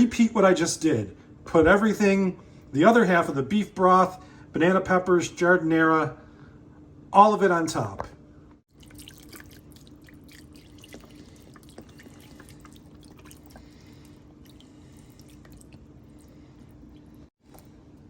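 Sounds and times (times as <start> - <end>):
liquid dripping and plinking: 8.7 - 18.0.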